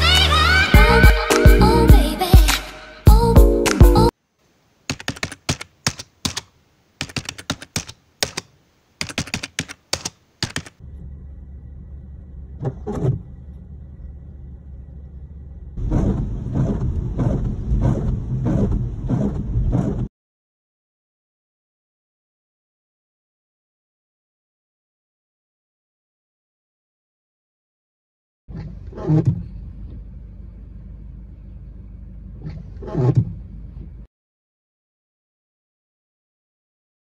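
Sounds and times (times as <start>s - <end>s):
sharp clicks: 4.9s - 10.8s
steady low hum: 10.8s - 20.0s, 28.8s - 34.1s
windshield wipers sweeping: 12.4s - 13.9s, 15.3s - 20.1s.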